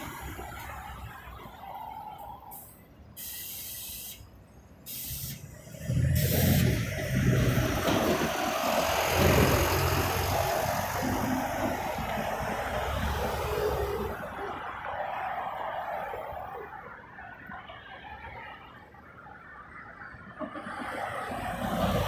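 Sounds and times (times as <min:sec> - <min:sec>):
city street traffic: 0:00.0 - 0:22.0
heavy vehicle engine running: 0:05.3 - 0:14.5.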